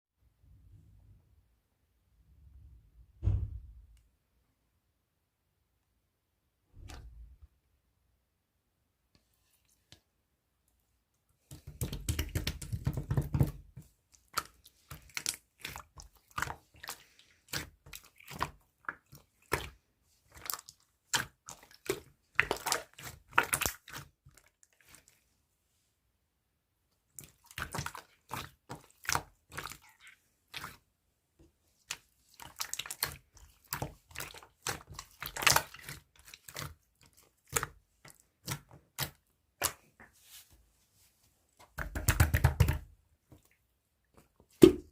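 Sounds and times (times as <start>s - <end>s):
slime being squished by hand: 11.5s - 25.2s, 27.1s - 30.8s, 31.8s - 40.1s.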